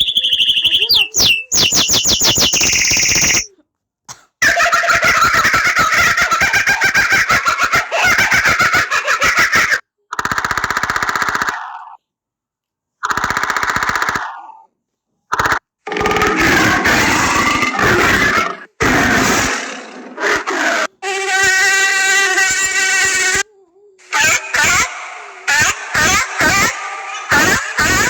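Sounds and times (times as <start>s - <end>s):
animal-sound ringtones from phone: 0.0s - 3.5s.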